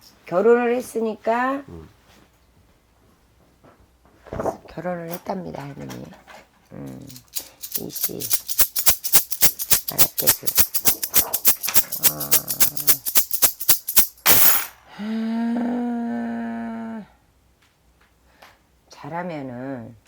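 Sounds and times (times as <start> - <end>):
hand rattle clicking: 7.0 - 14.7.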